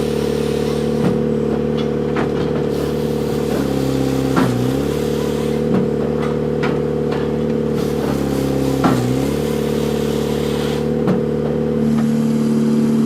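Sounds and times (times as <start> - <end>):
diesel engine running: 0.0 - 13.0
machine knocking on wood: 4.3 - 4.9, 5.7 - 8.2, 8.8 - 9.4.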